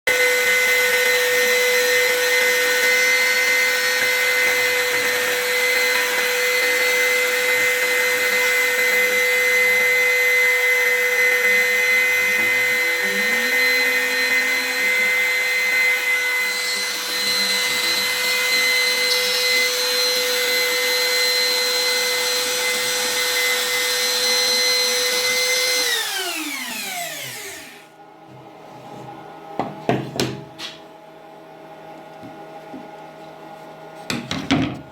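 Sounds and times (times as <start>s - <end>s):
router spindle whining: 0.1s - 28.0s.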